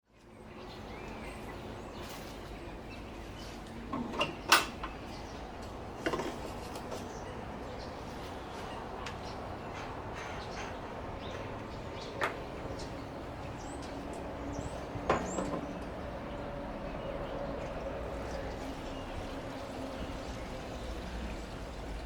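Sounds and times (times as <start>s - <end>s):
steady background noise: 0.1s - 22.0s
sharp knocks and clinks: 3.9s - 5.1s, 15.1s - 15.9s.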